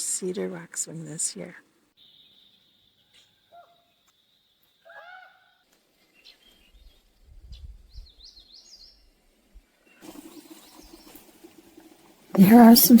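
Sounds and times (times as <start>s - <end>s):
songbirds singing: 0.0s - 9.2s.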